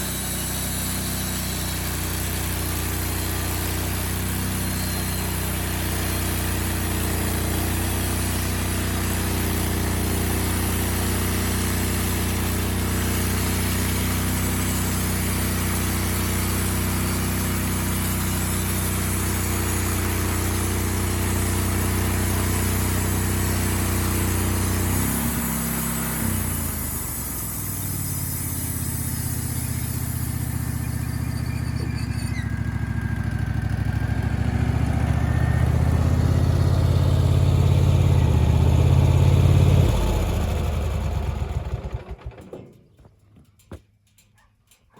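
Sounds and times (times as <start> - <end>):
saw blade cutting log: 0.0 - 32.7
sawmill engine running: 0.0 - 42.4.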